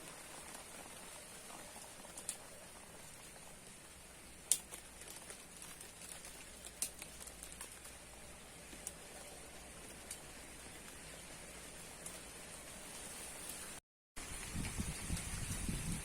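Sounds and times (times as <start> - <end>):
drops ticking and pattering: 0.0 - 12.7
steady rain: 0.0 - 16.0.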